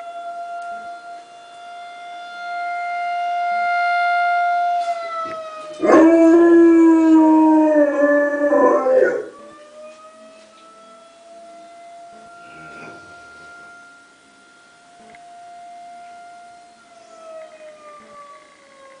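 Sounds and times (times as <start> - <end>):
warning siren wailing: 0.0 - 19.0
dog howling: 5.8 - 9.6.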